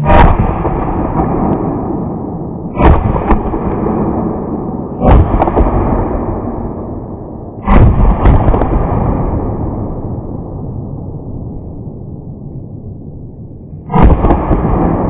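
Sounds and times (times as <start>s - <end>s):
loud shotgun shots: 0.0s - 9.8s, 13.9s - 15.0s.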